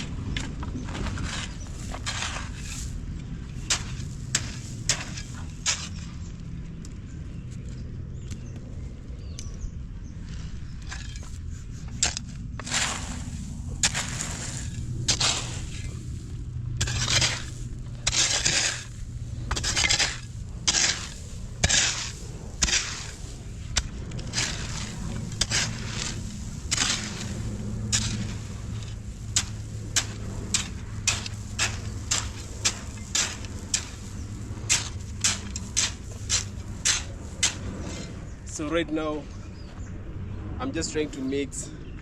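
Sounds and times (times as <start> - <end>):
shovel scraping through gravel: 0.0 - 6.3, 10.3 - 38.7.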